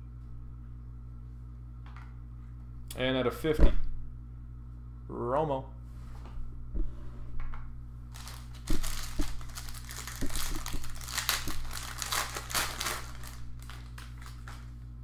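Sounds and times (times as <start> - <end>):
plastic packaging crinkling: 8.1 - 14.8.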